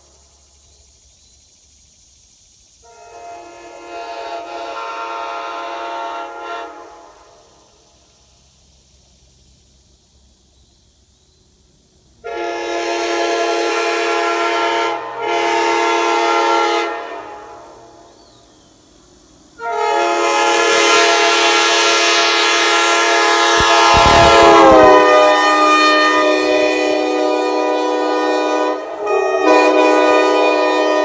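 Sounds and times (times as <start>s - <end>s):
locomotive air horn blasts: 2.8s - 7.4s, 12.2s - 18.1s, 19.6s - 31.0s
low rumble: 23.5s - 25.3s.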